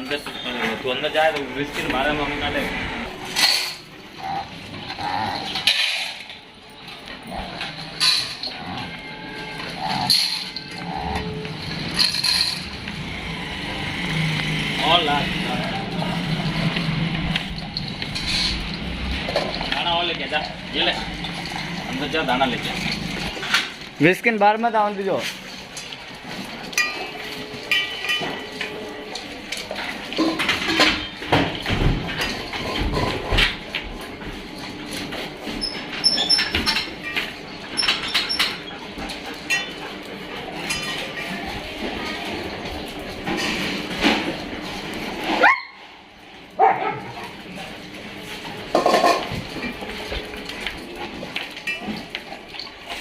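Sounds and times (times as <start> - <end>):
metal feeding bowls clinking: 0.0 - 45.6, 46.3 - 53.0
dogs barking: 45.2 - 47.6.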